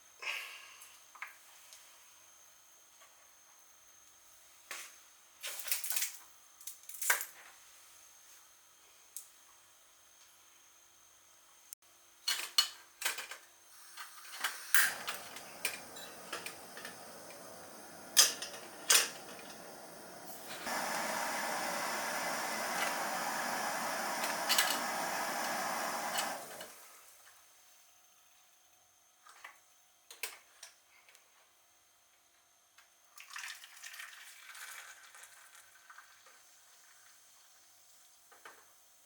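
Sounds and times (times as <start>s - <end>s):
gas burner hissing: 13.7s - 27.2s.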